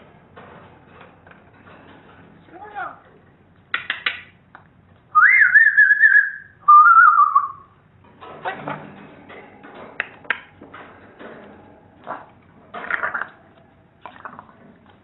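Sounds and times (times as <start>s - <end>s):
parrot chattering with clicks: 3.6s - 4.4s
parrot whistling warbling notes: 5.2s - 7.7s.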